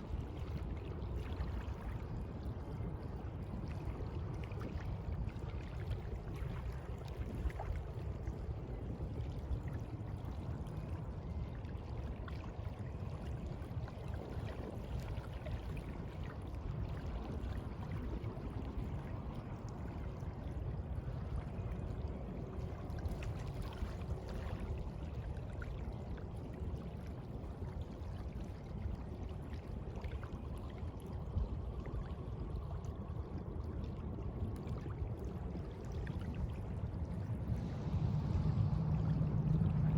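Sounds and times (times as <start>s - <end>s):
faint small ticks and splashes: 0.0s - 39.9s
sea water lapping: 14.0s - 39.9s.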